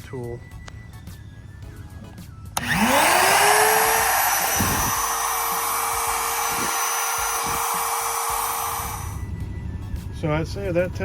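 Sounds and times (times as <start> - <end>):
rotary tool motor whine: 2.6 - 9.2.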